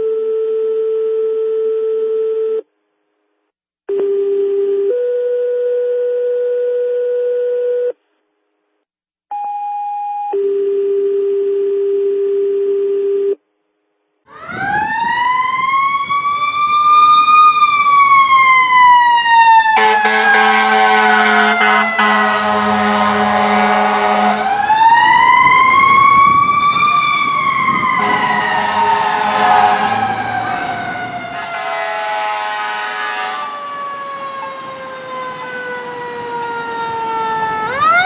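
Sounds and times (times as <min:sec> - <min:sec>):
emergency vehicle siren wailing: 0:14.3 - 0:38.0.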